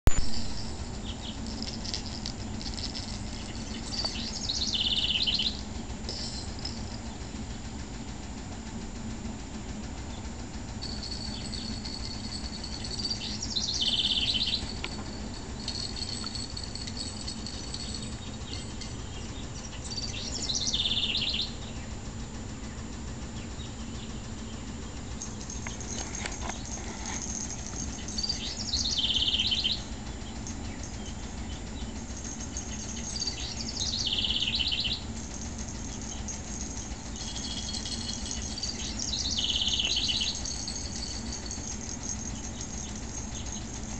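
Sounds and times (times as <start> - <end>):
songbird singing: 0.0 - 8.4, 9.6 - 43.9
steady low hum: 0.0 - 43.9
thin high bird notes: 10.8 - 21.6, 25.2 - 43.9.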